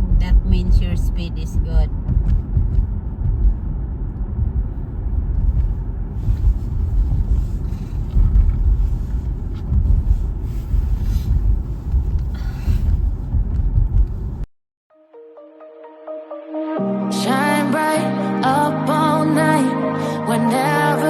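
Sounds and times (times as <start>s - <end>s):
road rumble inside car: 0.0s - 14.5s
tyre and air hiss: 6.2s - 13.4s.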